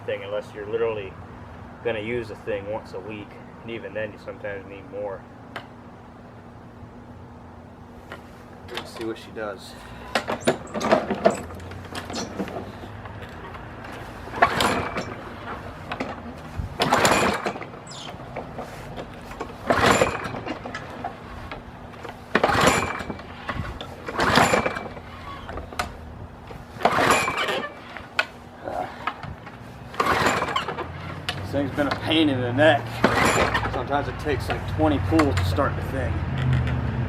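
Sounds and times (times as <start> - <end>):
mower recoil starter pulls: 9.8 - 35.6
small engine turning over: 26.8 - 31.2.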